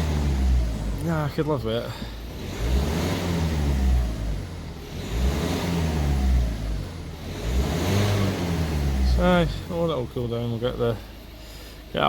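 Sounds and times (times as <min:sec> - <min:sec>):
diesel engine revving: 0:00.0 - 0:11.8.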